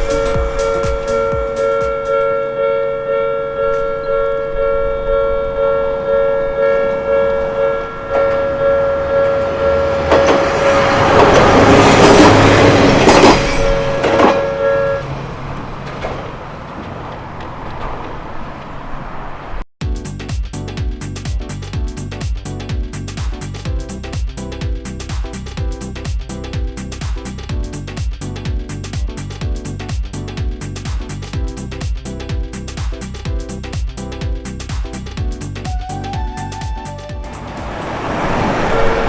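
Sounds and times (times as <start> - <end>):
level-crossing bell clanging: 0.0 - 18.7
wheels clacking on rail joints: 0.0 - 19.6, 37.3 - 39.0
diesel railcar passing: 0.0 - 19.7, 37.2 - 39.0.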